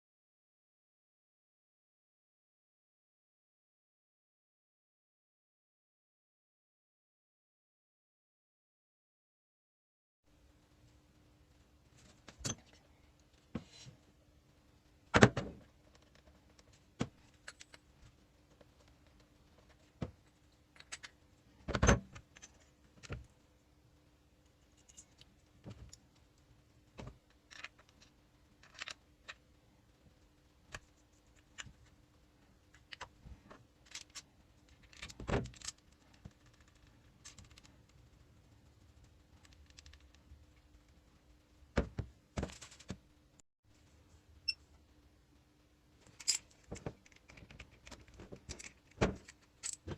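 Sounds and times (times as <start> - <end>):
faint steady hum: 10.3 - 49.9.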